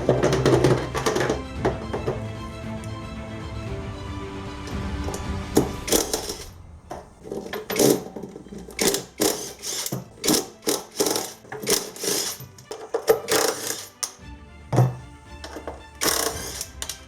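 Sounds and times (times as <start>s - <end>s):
background music: 0.0s - 17.0s
mechanical clicking and rattling: 5.0s - 14.2s, 15.5s - 17.0s.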